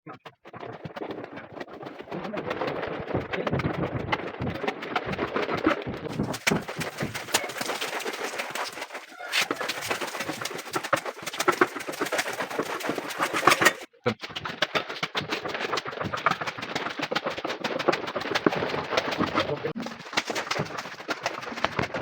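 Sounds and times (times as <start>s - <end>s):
rapid clicks and scrapes: 0.0s - 22.0s.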